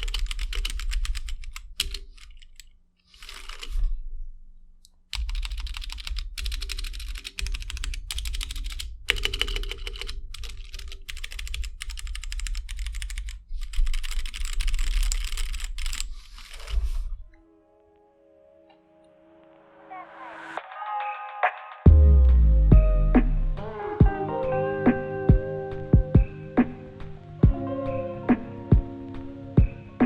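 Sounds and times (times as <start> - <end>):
mechanical keyboard typing: 0.0 - 3.8, 5.1 - 16.8.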